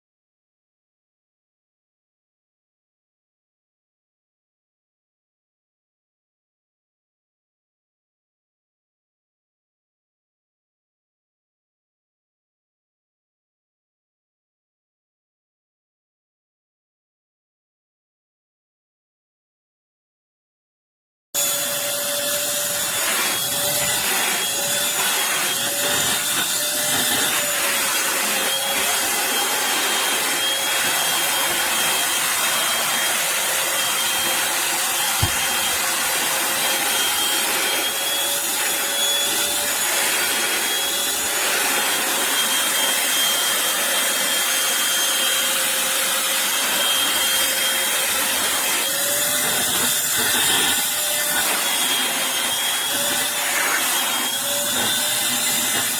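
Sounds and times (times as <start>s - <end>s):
stick vacuum running: 21.4s - 55.9s.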